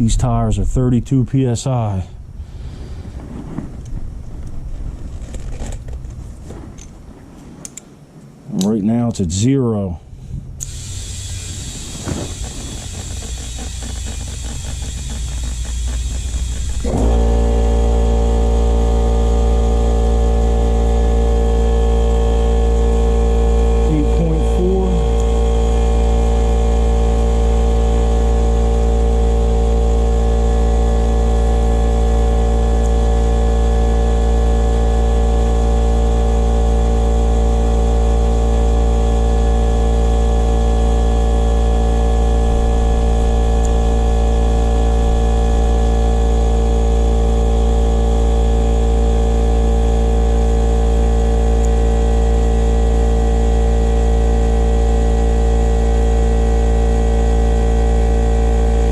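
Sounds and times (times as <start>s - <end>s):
tire inflator compressor humming: 10.2s - 58.9s.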